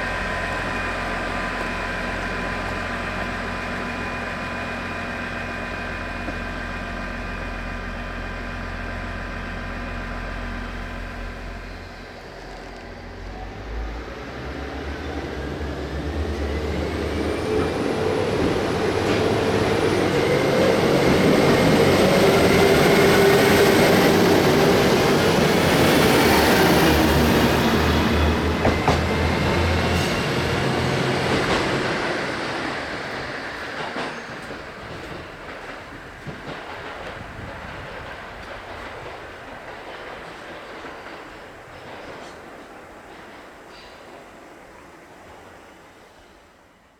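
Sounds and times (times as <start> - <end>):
train passing: 0.0 - 46.9
wheels clacking over rail joints: 20.9 - 44.7.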